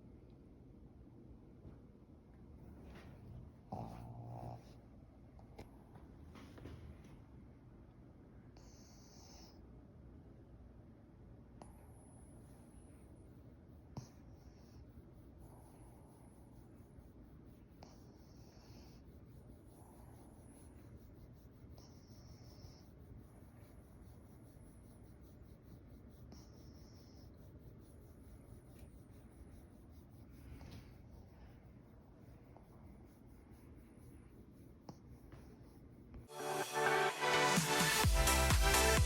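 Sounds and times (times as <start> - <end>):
dog snoring with whistling wheeze: 8.6 - 9.6.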